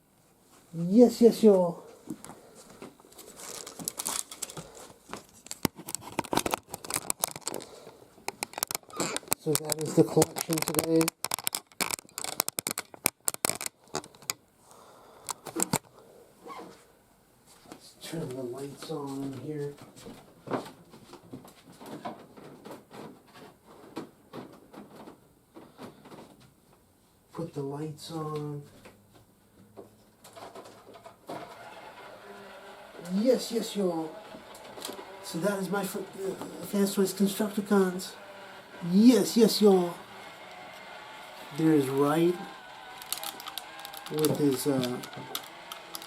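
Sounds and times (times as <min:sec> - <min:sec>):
crinkling rustling handling noise: 0:01.9 - 0:14.4, 0:38.6 - 0:46.0
sharp clicks: 0:05.5 - 0:14.4, 0:42.7 - 0:46.0.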